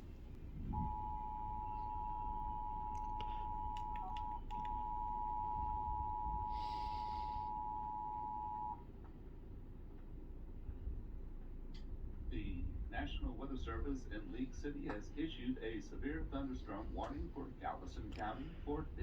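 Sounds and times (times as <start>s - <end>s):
two-tone alert signal: 0.8s - 8.8s.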